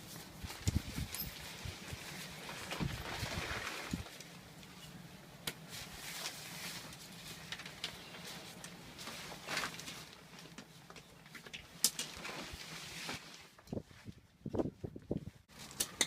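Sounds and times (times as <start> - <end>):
fabric rustling: 0.0 - 4.2.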